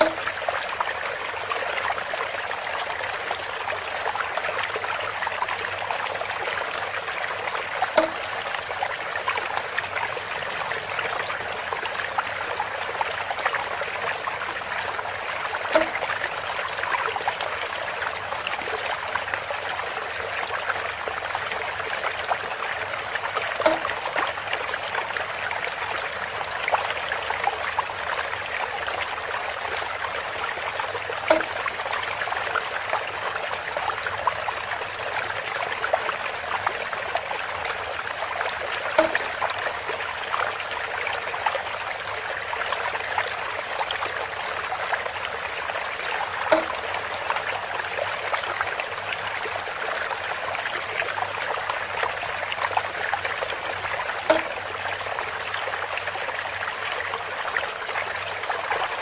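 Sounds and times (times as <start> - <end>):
bamboo knock: 0.0 - 0.3, 7.9 - 8.3, 15.7 - 16.1, 23.6 - 24.3, 31.3 - 31.6, 39.0 - 39.4, 46.5 - 46.8, 54.3 - 54.6
water trickling through bamboo: 0.0 - 59.0.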